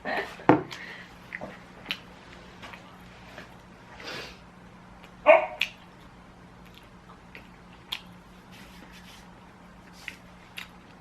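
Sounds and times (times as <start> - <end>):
small mouth clicks: 5.0 - 8.2
quiet chewing: 5.0 - 11.0.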